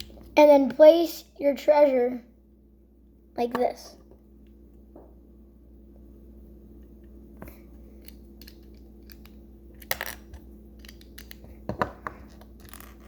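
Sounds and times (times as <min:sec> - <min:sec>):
plastic pieces clicking and clattering: 0:08.0 - 0:13.0.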